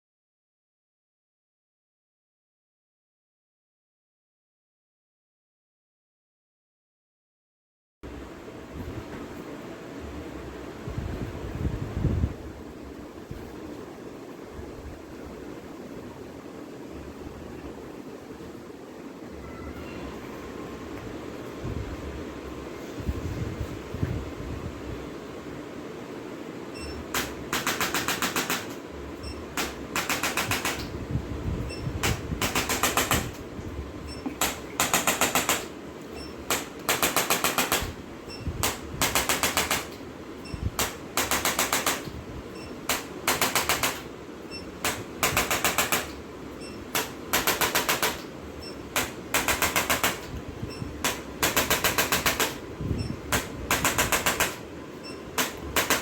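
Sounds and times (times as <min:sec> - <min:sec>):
low steady hum: 0:08.0 - 0:56.0
rapid mechanical tapping: 0:26.9 - 0:31.0, 0:31.7 - 0:33.5, 0:34.2 - 0:38.0, 0:38.6 - 0:44.2, 0:44.8 - 0:46.3, 0:46.9 - 0:56.0.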